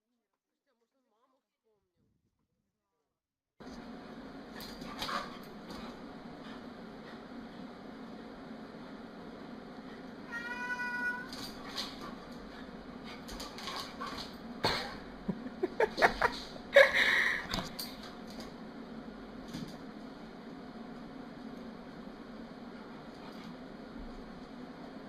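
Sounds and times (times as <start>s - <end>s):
cat meowing: 10.3s - 11.3s.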